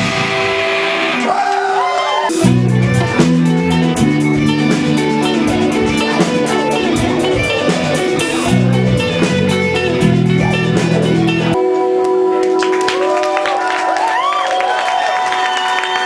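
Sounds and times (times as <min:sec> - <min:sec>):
live band playing: 0:00.0 - 0:01.4, 0:02.0 - 0:14.1
drum beat: 0:02.3 - 0:11.6.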